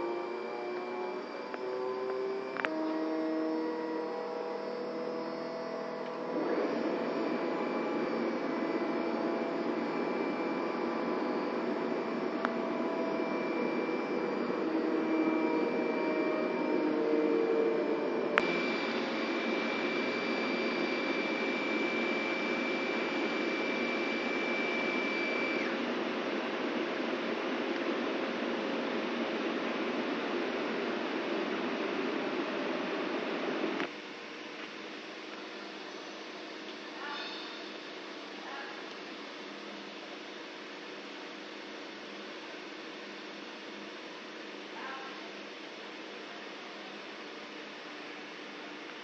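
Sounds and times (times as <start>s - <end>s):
machinery whirring: 0.0s - 33.9s.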